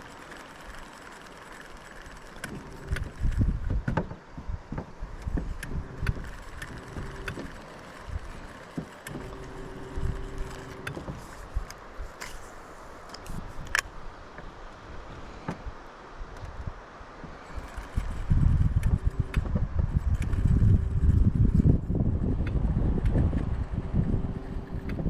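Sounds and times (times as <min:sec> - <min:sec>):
electric motor humming: 0:00.0 - 0:13.4, 0:17.3 - 0:25.0
clicks and knocks on boat: 0:00.2 - 0:12.5, 0:17.2 - 0:20.8.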